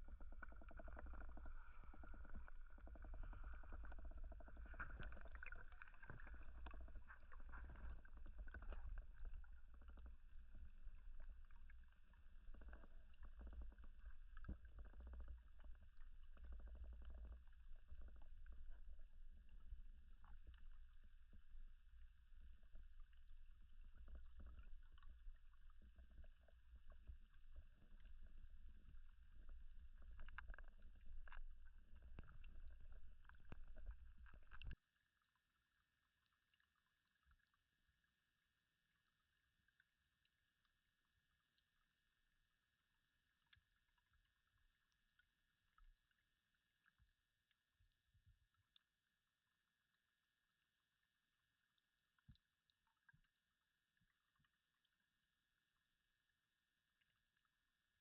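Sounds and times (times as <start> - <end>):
muffled underwater rumble: 0.0 - 34.8
clicks and ticks underwater: 0.0 - 58.0.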